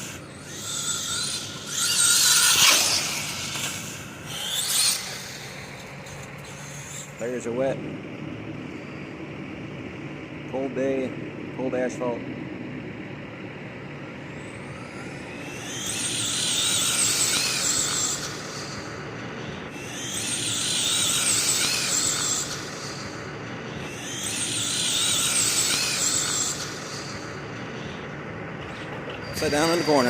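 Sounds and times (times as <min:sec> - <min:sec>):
electric motor whining: 0:00.0 - 0:07.5, 0:14.1 - 0:28.1.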